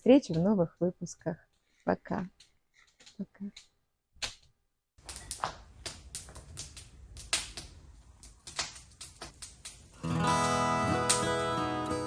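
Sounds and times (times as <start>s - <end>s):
wood fire crackling: 5.0s - 12.0s
acoustic guitar music: 10.0s - 12.0s.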